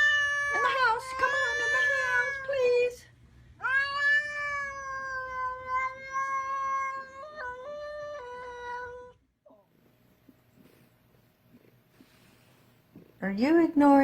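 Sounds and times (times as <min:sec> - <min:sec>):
cat yowling: 0:00.0 - 0:02.6, 0:03.6 - 0:09.2.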